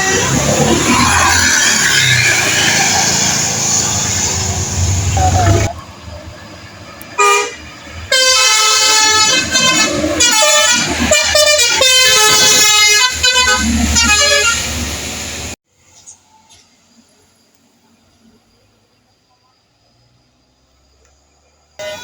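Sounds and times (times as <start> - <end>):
musical air horn melody: 7.2 - 14.9, 21.8 - 22.0.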